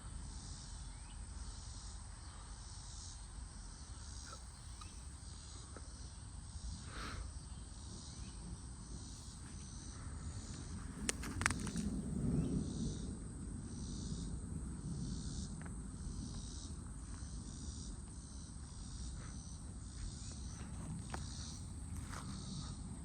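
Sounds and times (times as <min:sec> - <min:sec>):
insects chirping in pulsing chorus: 0:00.0 - 0:23.0.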